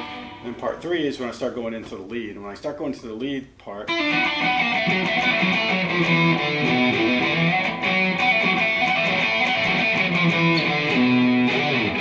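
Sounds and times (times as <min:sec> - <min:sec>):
electric guitar lead line: 0:00.0 - 0:00.8, 0:03.9 - 0:12.0.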